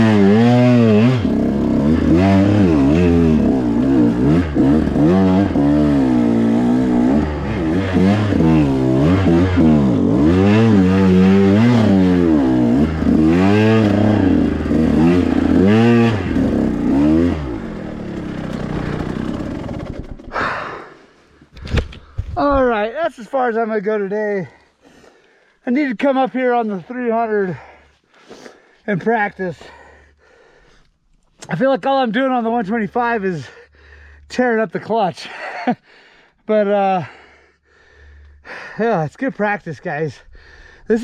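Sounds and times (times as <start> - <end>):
dirt bike engine revving: 0.0 - 20.6.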